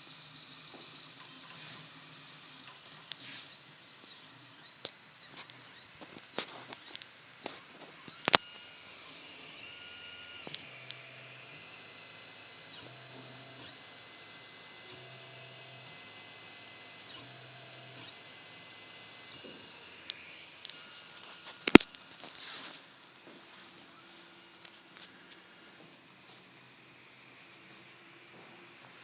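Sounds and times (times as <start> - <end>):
stepper motors whining: 0.5 - 21.8.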